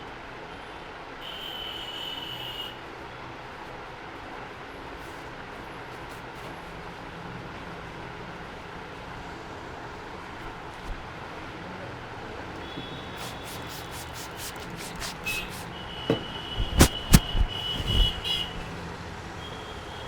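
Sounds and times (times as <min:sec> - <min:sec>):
quick sharp clicks: 0:16.6 - 0:18.7.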